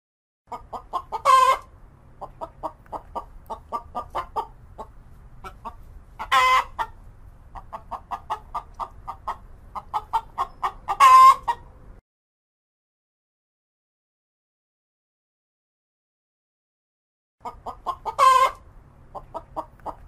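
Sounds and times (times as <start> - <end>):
chicken clucking: 0.5 - 11.7, 17.4 - 20.0
chicken squawk: 0.5 - 11.7, 17.4 - 20.0.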